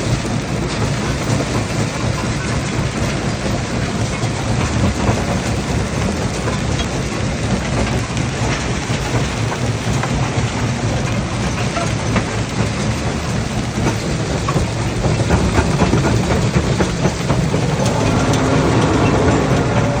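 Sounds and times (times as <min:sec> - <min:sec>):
rock crusher rumbling: 0:00.0 - 0:20.0
droning machine tone: 0:15.5 - 0:20.0.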